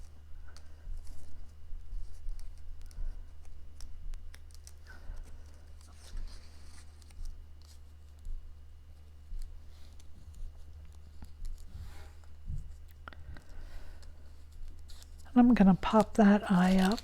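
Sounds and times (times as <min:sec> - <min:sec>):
cardstock paper clicks and rustles: 0:02.0 - 0:08.3, 0:13.3 - 0:17.0.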